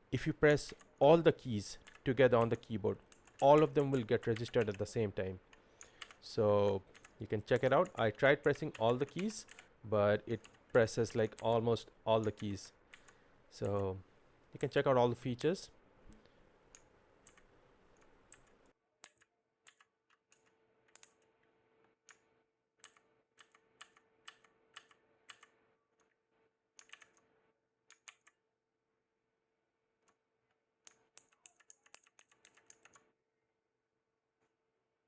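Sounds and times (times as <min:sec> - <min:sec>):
clicky keyboard keystrokes: 0:05.8 - 0:09.7, 0:22.8 - 0:25.5, 0:26.8 - 0:27.2, 0:27.9 - 0:28.4, 0:30.9 - 0:33.0.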